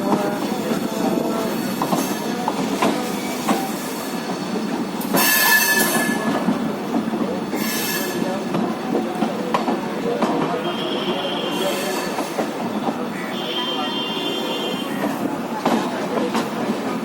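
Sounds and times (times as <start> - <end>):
train wheels clicking on rails: 0.0 - 17.0
high metallic train squeal: 3.1 - 6.4, 7.5 - 8.3.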